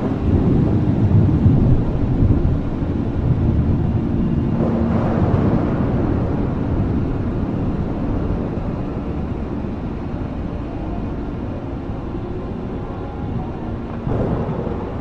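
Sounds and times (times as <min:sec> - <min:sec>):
rolling thunder: 0:00.0 - 0:10.0, 0:13.8 - 0:15.0.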